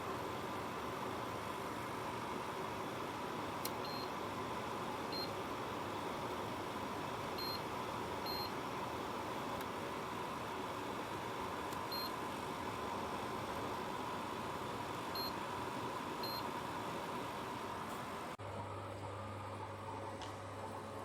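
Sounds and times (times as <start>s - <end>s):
dehumidifier fan hiss and hum: 0.0s - 21.0s
click: 3.6s - 3.8s.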